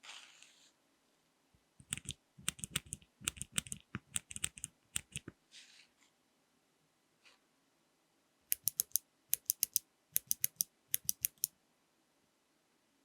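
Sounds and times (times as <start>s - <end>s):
mechanical keyboard switch clicks: 1.8s - 5.3s, 8.5s - 11.5s.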